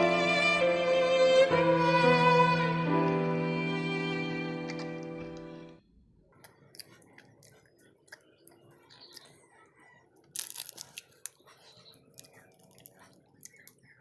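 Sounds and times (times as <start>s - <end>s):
faint chewing: 6.3s - 14.0s.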